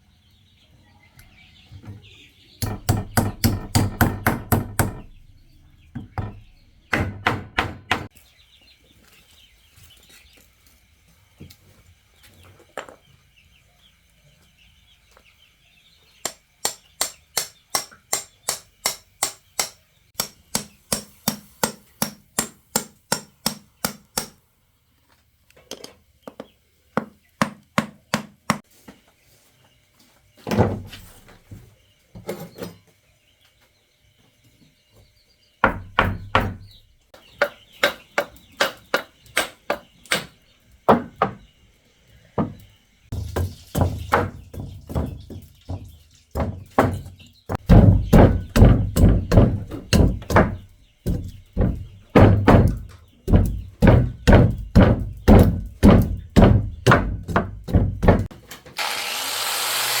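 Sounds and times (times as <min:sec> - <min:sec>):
hammer knocks: 0:02.6 - 0:05.2, 0:06.0 - 0:08.1, 0:46.4 - 0:58.3
electric tool motor running: 0:58.8 - 1:00.0.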